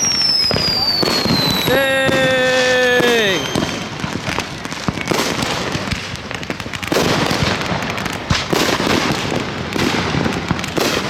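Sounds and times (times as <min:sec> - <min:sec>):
fireworks popping and crackling: 0:00.0 - 0:11.0.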